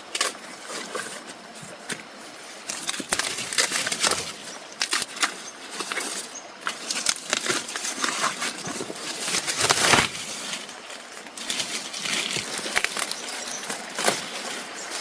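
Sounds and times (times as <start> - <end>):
rustling and crackling: 0.0 - 15.0.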